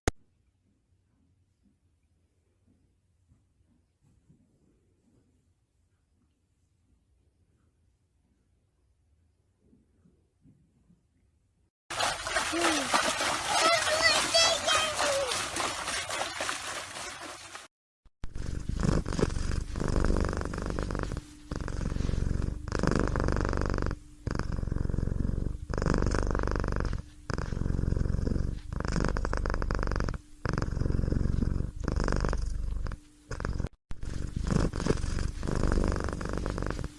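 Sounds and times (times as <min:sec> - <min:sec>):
cat purring loudly: 0:11.9 - 0:17.4, 0:18.2 - 0:36.9.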